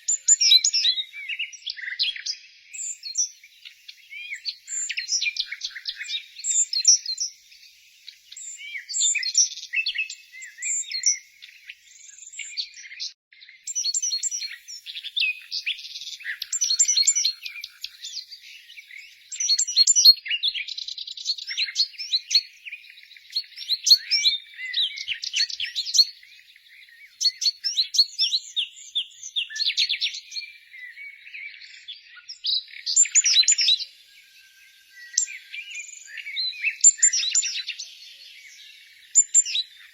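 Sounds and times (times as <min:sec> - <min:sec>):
songbirds chirping and singing: 0:00.0 - 0:39.9.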